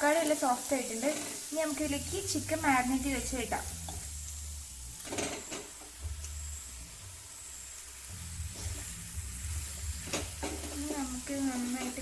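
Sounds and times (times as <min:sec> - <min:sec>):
hot pan hissing: 0:00.0 - 0:12.0
knocks and scrapes in a pan: 0:10.0 - 0:11.1.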